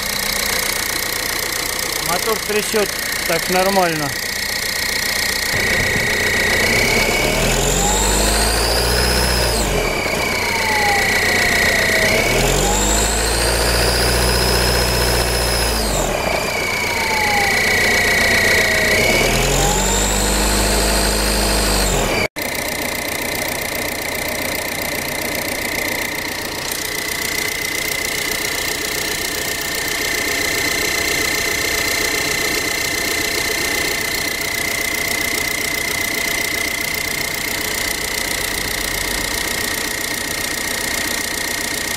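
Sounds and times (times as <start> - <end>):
diesel engine revving and idling: 0.0 - 41.9
high turbo whistle: 3.0 - 22.0.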